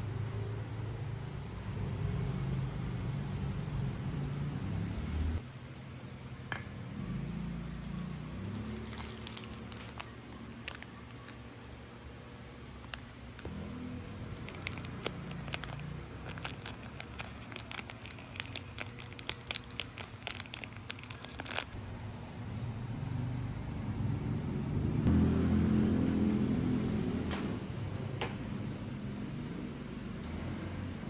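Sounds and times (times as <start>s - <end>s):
crinkling: 8.6s - 11.8s, 12.8s - 21.8s.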